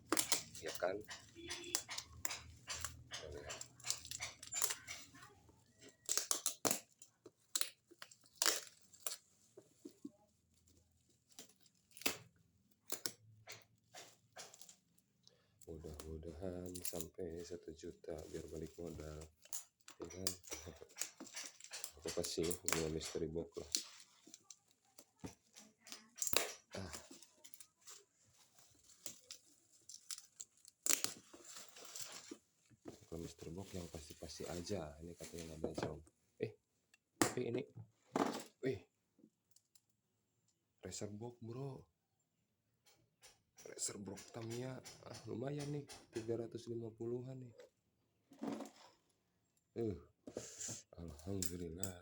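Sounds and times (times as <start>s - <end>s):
clicks of toy parts: 0.0s - 5.2s, 5.9s - 9.2s, 19.5s - 27.7s
cardboard and plastic packaging rustling: 16.1s - 36.0s.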